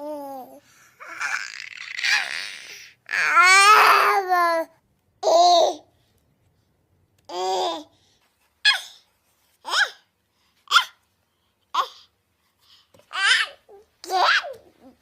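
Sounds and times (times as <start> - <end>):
baby babbling and cooing: 0.0 - 5.9, 7.3 - 8.0, 9.6 - 10.1, 10.7 - 11.0, 11.7 - 12.1, 13.0 - 15.0.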